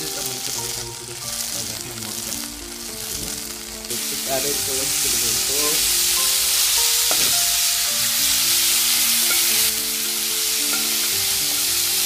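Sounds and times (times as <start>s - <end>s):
sausage and onions sizzling: 0.0s - 12.0s
simple tune of held notes: 0.0s - 12.0s.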